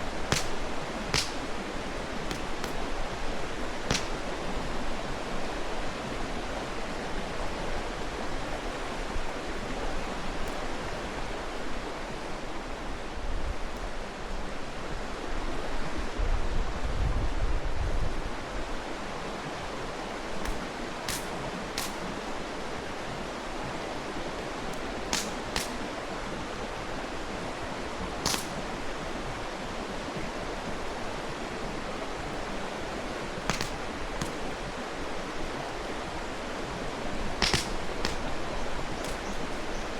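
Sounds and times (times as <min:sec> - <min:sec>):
campfire wood popping: 0:00.0 - 0:04.8, 0:20.4 - 0:22.3, 0:24.7 - 0:26.0, 0:28.2 - 0:28.9, 0:33.4 - 0:34.7, 0:37.0 - 0:39.8
mountain stream flowing: 0:00.0 - 0:39.9.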